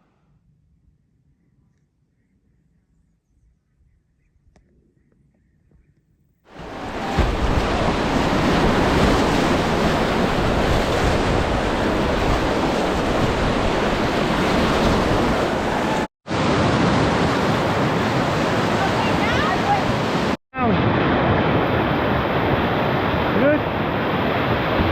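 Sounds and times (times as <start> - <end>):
river rapids rushing: 6.5 - 20.4
wind buffeting microphone: 6.6 - 16.1.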